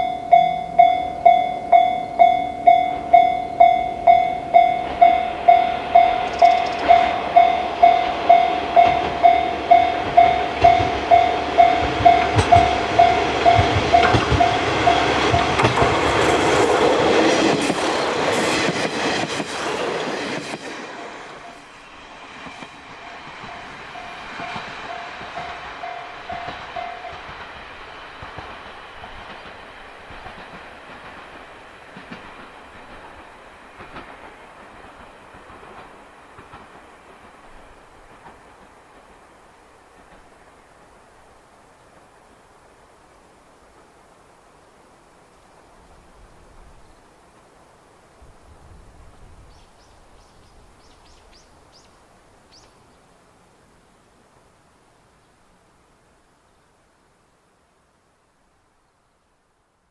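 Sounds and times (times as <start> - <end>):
level-crossing warning bell: 0.0 - 17.7, 22.6 - 28.0
train wheels clattering: 0.0 - 40.4.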